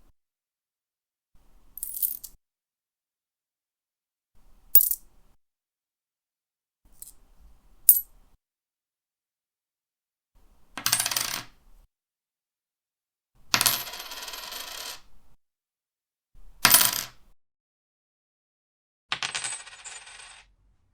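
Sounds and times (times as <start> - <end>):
coins jingling: 1.8 - 2.3, 4.8 - 5.0
coin clinking: 1.8 - 2.4, 4.8 - 5.0, 7.9 - 8.1, 19.2 - 20.4
coins rattling: 1.8 - 2.4, 4.8 - 5.0, 19.2 - 20.4.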